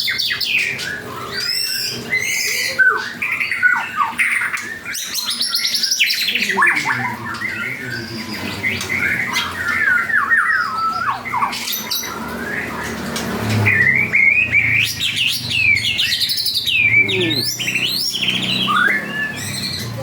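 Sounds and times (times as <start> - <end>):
bird singing whistled phrases: 9.0 - 12.8, 13.7 - 20.0.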